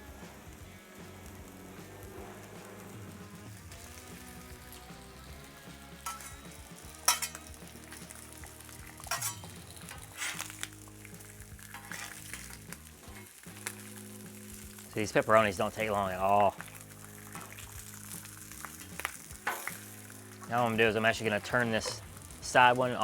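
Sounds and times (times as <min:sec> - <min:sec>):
food sizzling on a griddle: 0:00.0 - 0:23.0
metal tool strikes: 0:06.1 - 0:07.5, 0:09.1 - 0:10.1.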